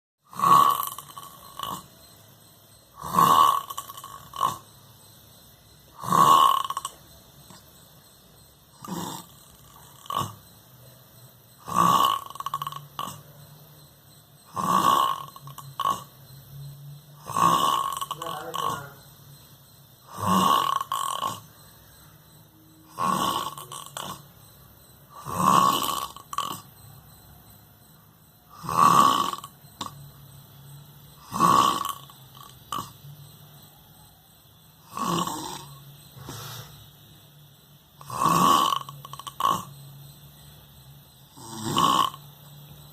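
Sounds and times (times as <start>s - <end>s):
person snoring: 0.3s - 1.9s, 2.9s - 4.8s, 5.9s - 7.6s, 8.7s - 10.5s, 11.6s - 13.3s, 14.4s - 16.2s, 17.2s - 19.0s, 20.1s - 21.7s, 22.9s - 24.4s, 25.1s - 26.8s, 28.5s - 30.0s, 31.2s - 33.0s, 34.8s - 36.9s, 38.0s - 39.8s, 41.3s - 42.4s.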